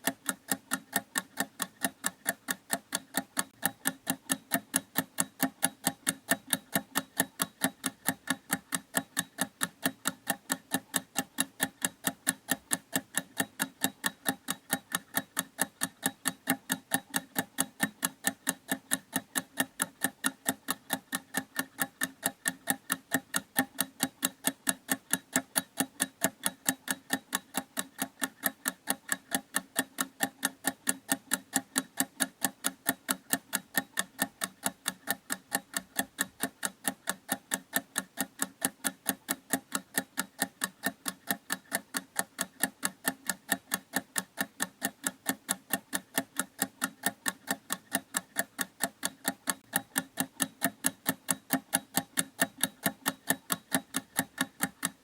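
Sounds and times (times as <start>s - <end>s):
clock ticking: 0.0s - 55.0s.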